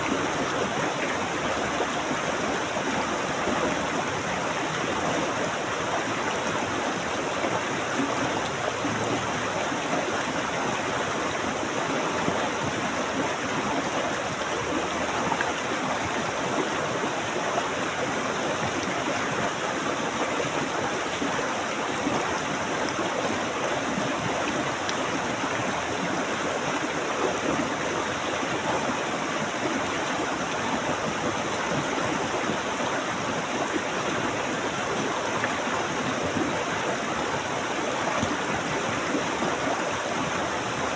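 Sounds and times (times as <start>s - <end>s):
stream water rushing: 0.0s - 40.9s.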